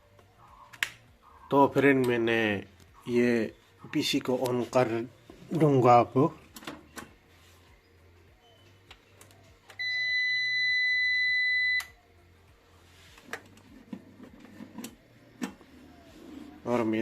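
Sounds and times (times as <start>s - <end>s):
high-pitched motherboard beep: 9.8s - 12.0s.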